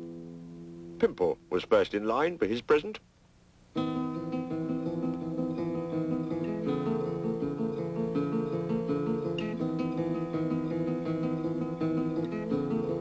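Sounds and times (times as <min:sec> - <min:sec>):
lively acoustic guitar tune: 0:03.8 - 0:13.0.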